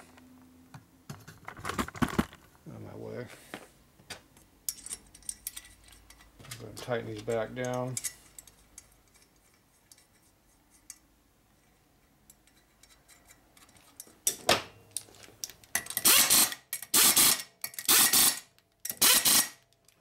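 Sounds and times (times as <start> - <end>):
ratchet wrench ratcheting: 15.8 - 19.6.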